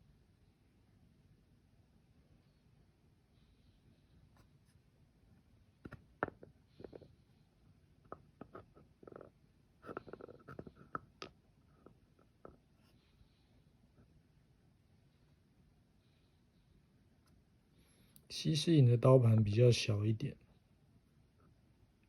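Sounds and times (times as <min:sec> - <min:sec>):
metal burrs clicking and knocking: 0:08.1 - 0:12.6.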